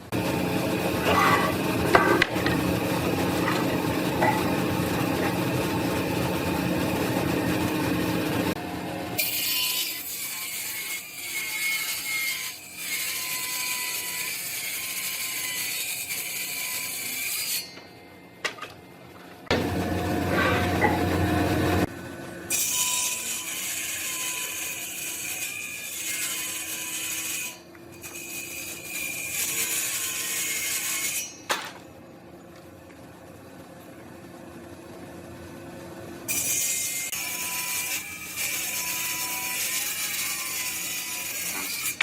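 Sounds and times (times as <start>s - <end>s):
woodworking machine running: 0.0s - 9.2s, 19.5s - 22.3s.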